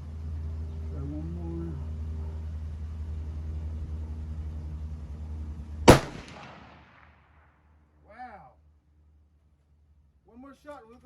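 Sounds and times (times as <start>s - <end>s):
rifle shot: 5.9s - 7.3s.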